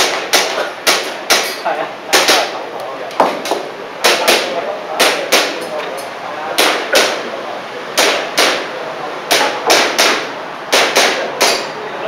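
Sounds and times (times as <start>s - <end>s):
airsoft pistol shots: 0.0s - 2.5s, 6.6s - 7.2s, 8.0s - 8.7s, 9.3s - 11.7s.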